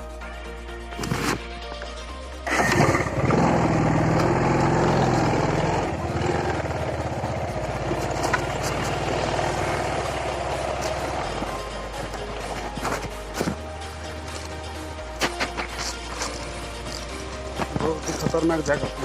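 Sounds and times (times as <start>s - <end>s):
background music: 0.0s - 19.0s
motorcycle engine running: 2.5s - 13.1s.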